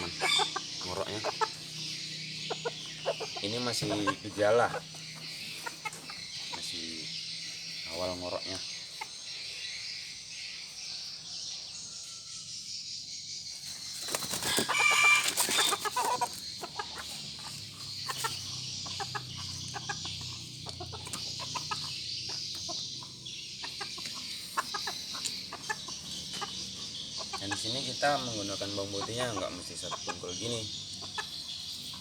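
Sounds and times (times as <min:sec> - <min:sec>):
junglefowl squawking: 0:00.0 - 0:07.1, 0:14.2 - 0:32.0
junglefowl clucking: 0:00.0 - 0:09.2, 0:14.0 - 0:32.0
wing flapping: 0:13.9 - 0:16.3.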